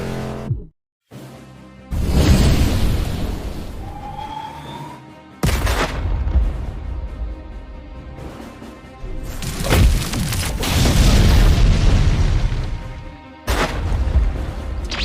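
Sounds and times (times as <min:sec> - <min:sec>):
background music: 0:00.0 - 0:15.0.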